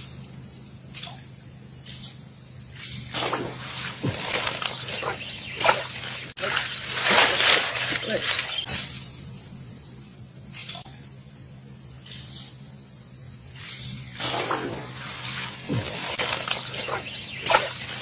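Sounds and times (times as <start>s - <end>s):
water splashing and sloshing: 3.0s - 8.7s, 14.0s - 18.0s.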